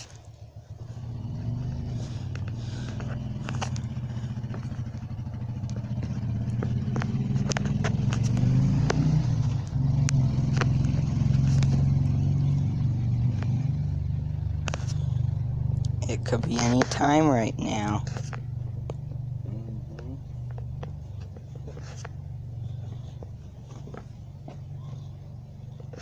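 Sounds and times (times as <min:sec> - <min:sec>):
engine running: 0:00.0 - 0:26.0
light clicks and taps: 0:01.4 - 0:17.0.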